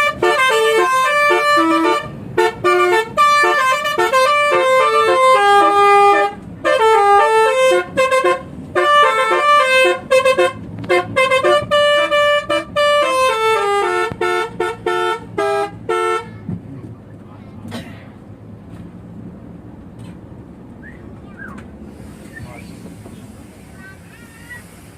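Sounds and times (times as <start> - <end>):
multi-note bus air horn tune: 0.0 - 16.4.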